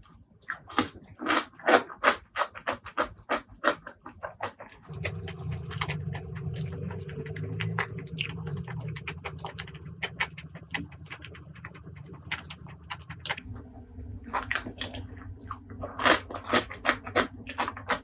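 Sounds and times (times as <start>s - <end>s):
wet chewing and mouth clicks: 0.4s - 18.0s
steady low rumble: 4.8s - 18.0s.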